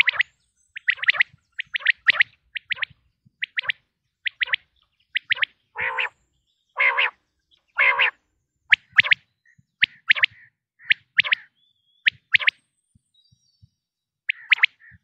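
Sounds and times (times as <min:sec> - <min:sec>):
quail calling sharp high notes: 0:00.0 - 0:00.2, 0:05.2 - 0:06.1, 0:06.8 - 0:07.2, 0:07.8 - 0:08.1, 0:14.3 - 0:15.0
low rasping quail calls: 0:00.0 - 0:06.2, 0:06.8 - 0:07.2, 0:07.8 - 0:09.2, 0:09.8 - 0:11.5, 0:14.3 - 0:15.0.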